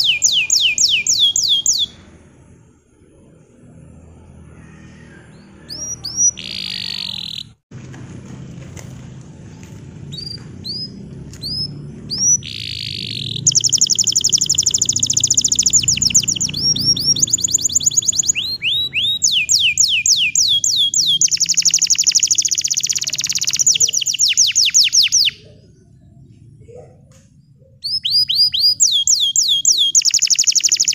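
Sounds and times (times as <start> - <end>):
canary singing: 0.0 - 2.3, 4.0 - 7.6, 10.0 - 26.4, 27.5 - 30.9.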